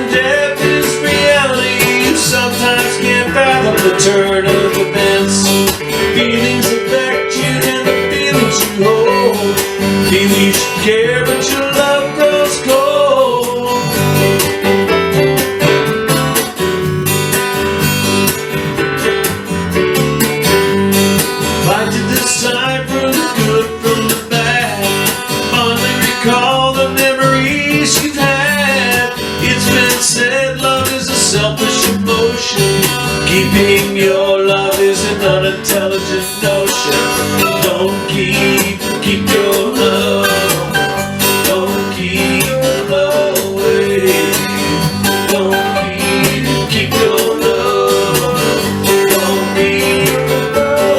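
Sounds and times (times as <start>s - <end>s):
country acoustic guitar music: 0.0s - 50.9s.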